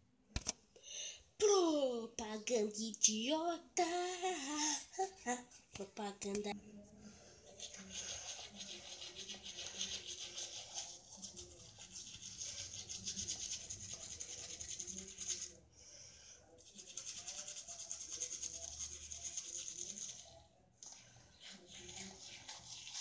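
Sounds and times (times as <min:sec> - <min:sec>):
toothbrush scrubbing teeth: 0:07.4 - 0:15.6, 0:16.6 - 0:23.0.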